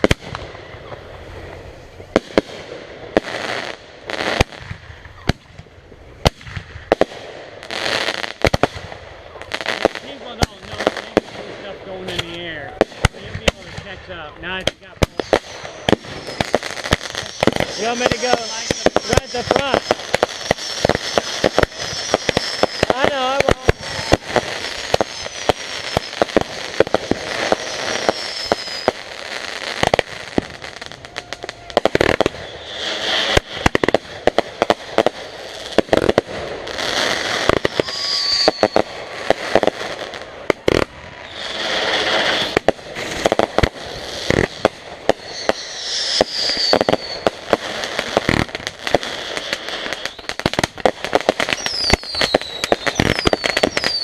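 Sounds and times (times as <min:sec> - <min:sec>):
fireworks bangs and crackling: 0:00.0 - 0:54.0
firework hissing bursts: 0:06.2 - 0:54.0
falling firework whistles: 0:15.0 - 0:34.0, 0:35.0 - 0:54.0.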